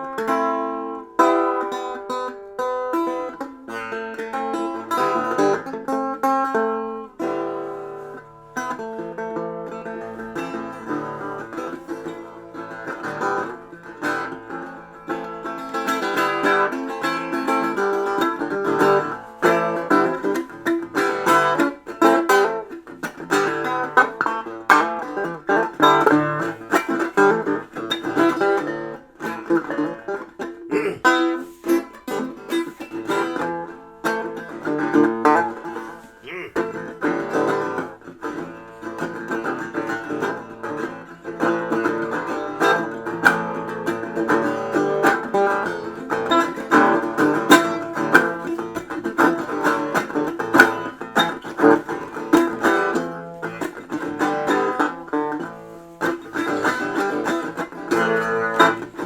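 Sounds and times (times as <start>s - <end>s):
plucked string instrument music: 0.0s - 59.0s.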